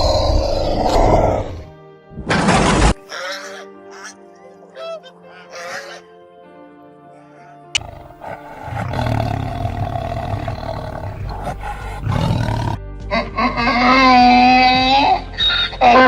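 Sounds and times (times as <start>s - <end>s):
background music: 0.0s - 16.0s
animal low rough roar: 7.8s - 12.8s.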